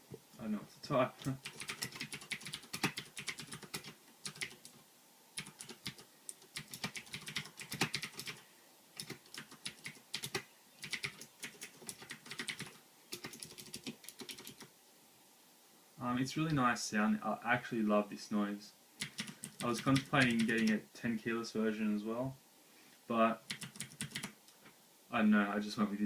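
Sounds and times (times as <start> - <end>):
clicky mechanical keyboard typing: 1.3 - 4.8, 5.4 - 8.4, 9.0 - 14.7, 19.0 - 20.8, 23.5 - 24.4.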